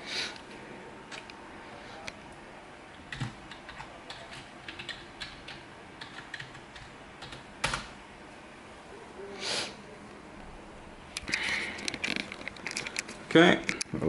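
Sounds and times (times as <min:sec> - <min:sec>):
keyboard typing: 0:03.0 - 0:07.9.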